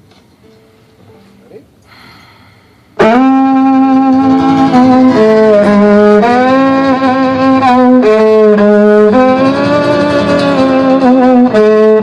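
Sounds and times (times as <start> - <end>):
low sustained accompaniment: 0.4 - 12.0
violin playing long held notes: 3.0 - 12.0.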